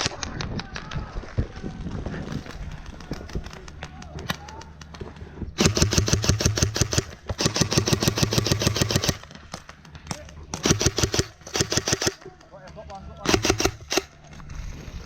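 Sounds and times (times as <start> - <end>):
airsoft gun firing bursts: 5.6 - 12.6, 13.2 - 14.2.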